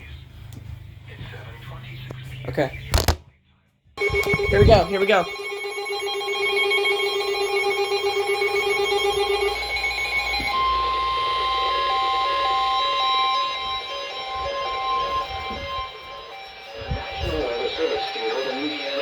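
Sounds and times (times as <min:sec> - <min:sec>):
short beeps: 0:04.0 - 0:11.1
steady warning tone: 0:04.0 - 0:19.0
warbling alarm tone: 0:04.0 - 0:19.0.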